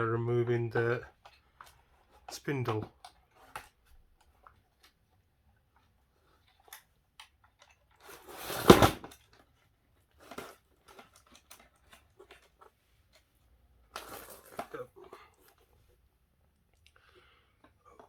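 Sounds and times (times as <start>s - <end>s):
loud ripping scrape: 8.1s - 9.1s.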